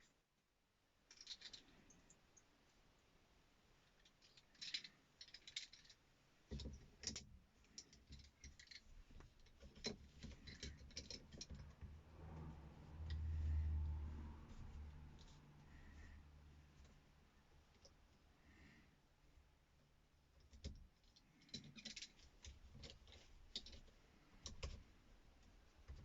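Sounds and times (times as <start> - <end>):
small hard parts clicking: 1.1 - 2.2, 3.8 - 11.9, 20.4 - 24.9.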